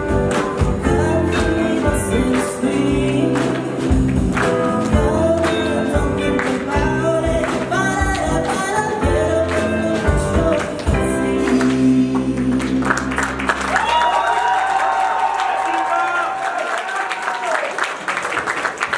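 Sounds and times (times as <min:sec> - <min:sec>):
drum hits: 0:00.0 - 0:11.3
person singing: 0:00.0 - 0:13.2
band playing live: 0:00.0 - 0:14.2.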